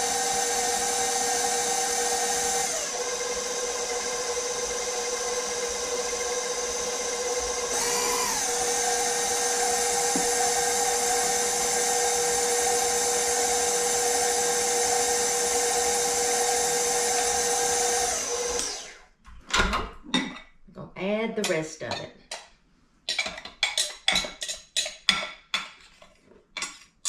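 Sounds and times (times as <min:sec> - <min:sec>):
electric stand mixer running: 0:00.0 - 0:19.0.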